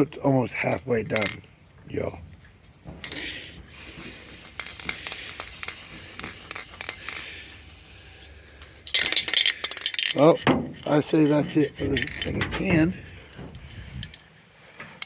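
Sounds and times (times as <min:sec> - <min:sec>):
spray paint can hissing: 0:03.7 - 0:08.3.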